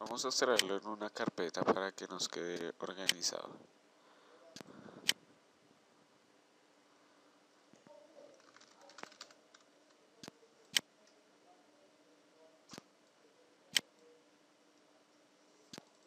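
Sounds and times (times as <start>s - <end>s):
faint steady hum: 0.0s - 16.0s
computer mouse clicks: 8.4s - 10.9s.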